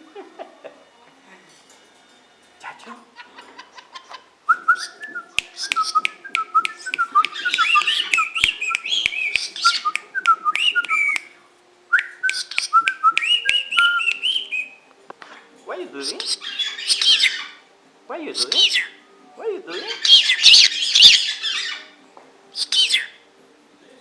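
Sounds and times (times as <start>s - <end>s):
pet birds chirping and whistling: 3.2s - 11.3s, 12.0s - 14.8s, 16.0s - 17.6s, 18.3s - 19.0s, 19.7s - 23.2s
sharp clicks: 5.4s - 11.3s.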